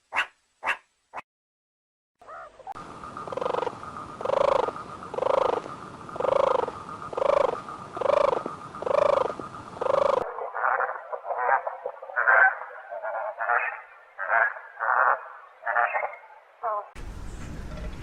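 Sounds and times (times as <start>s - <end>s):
animal calling: 0.1s - 1.2s, 2.2s - 17.0s
steady background hum: 2.3s - 13.1s.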